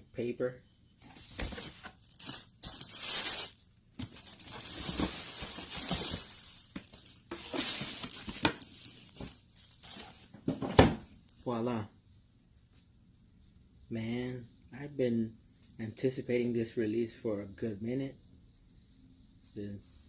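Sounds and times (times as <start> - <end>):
wrapping paper rustling: 1.1 - 10.3.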